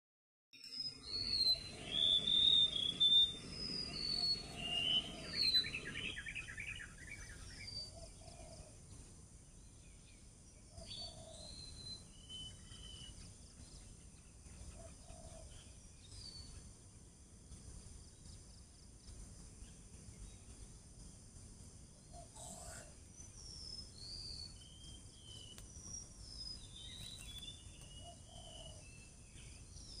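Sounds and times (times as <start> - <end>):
high insect drone: 0.7 - 7.5, 17.0 - 29.8
bird calling: 0.8 - 8.8, 10.7 - 13.1, 22.0 - 30.0.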